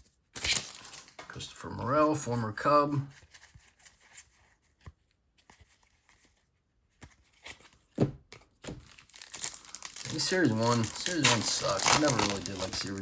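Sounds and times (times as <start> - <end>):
trading cards rustling and clicking: 0.0 - 1.4, 3.1 - 13.0.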